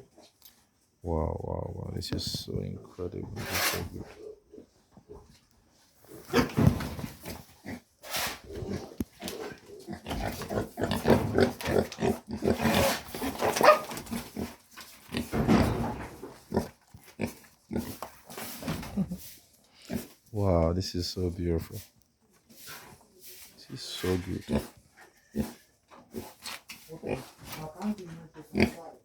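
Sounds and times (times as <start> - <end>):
pigs grunting: 6.1 - 19.0, 23.9 - 27.6, 28.4 - 29.0.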